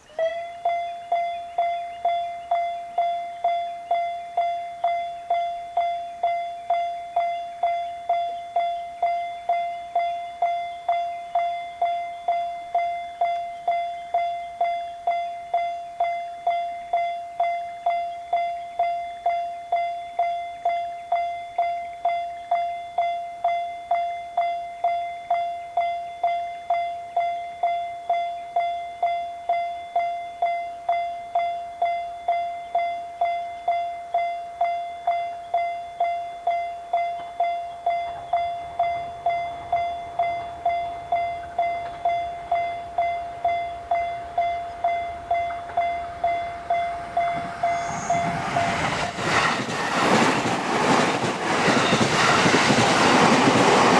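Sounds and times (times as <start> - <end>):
railroad crossing alarm ringing: 0.0 - 53.9
train rumbling: 33.7 - 53.9.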